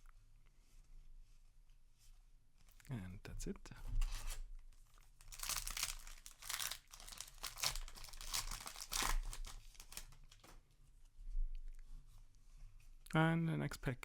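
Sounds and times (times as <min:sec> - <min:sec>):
foil wrapper crinkling and tearing: 0:05.0 - 0:10.6.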